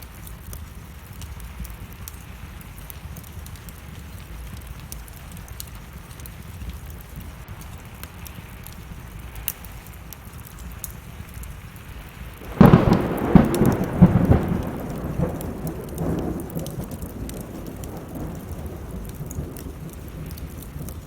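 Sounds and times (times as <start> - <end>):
steady rain: 0.0 - 21.0
wood fire crackling: 0.0 - 21.0
thunderclap rumbling: 12.4 - 21.0.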